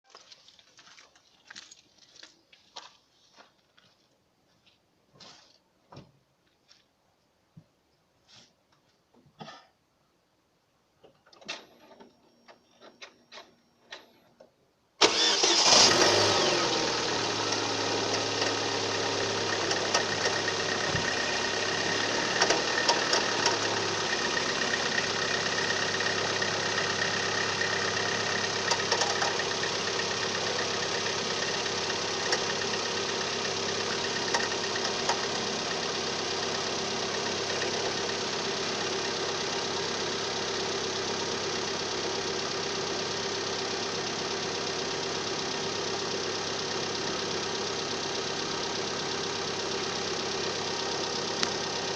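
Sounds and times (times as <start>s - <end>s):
car engine starting and idling: 15.0s - 51.9s.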